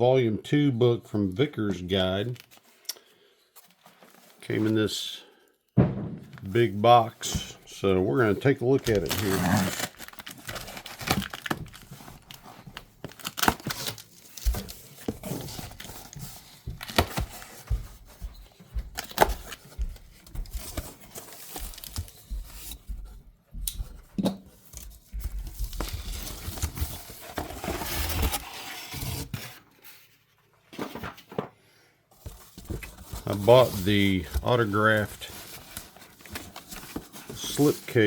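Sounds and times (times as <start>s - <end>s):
knocks and bumps: 5.8s - 6.6s
cardboard box tearing and rustling: 8.8s - 17.6s, 19.0s - 19.7s, 20.5s - 22.7s, 25.4s - 29.6s, 32.3s - 37.8s.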